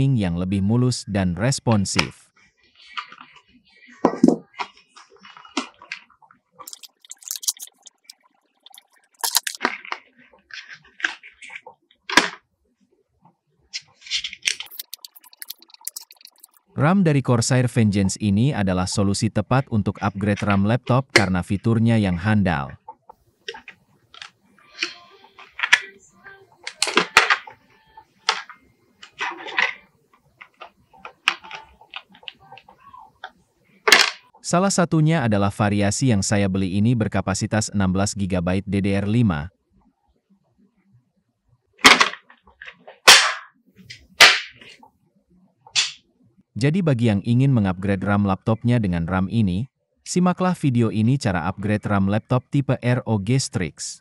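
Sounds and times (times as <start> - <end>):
scattered clicks: 14.6 - 16.6.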